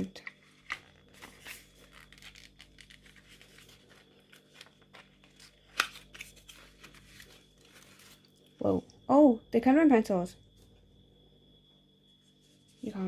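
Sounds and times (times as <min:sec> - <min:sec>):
packaging rustling and tearing: 0:00.6 - 0:08.3.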